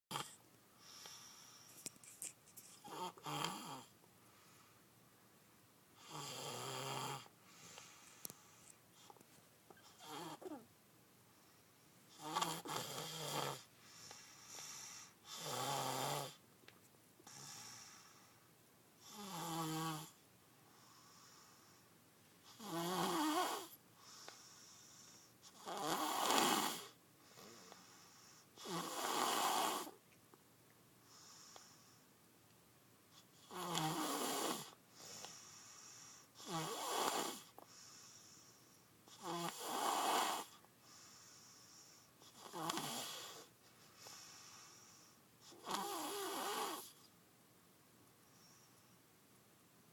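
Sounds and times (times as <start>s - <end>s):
loud rattling snores: 2.8s - 3.9s, 6.0s - 7.3s, 12.2s - 13.7s, 15.3s - 16.4s, 19.1s - 20.1s, 22.6s - 23.8s, 25.6s - 27.0s, 28.6s - 30.0s, 33.5s - 34.8s, 36.4s - 37.5s, 39.1s - 40.6s, 42.3s - 43.5s, 45.5s - 47.0s.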